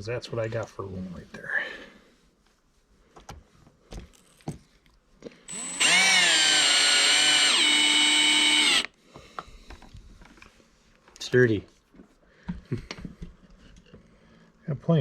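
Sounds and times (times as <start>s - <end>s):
power drill driving a screw: 5.5s - 8.9s.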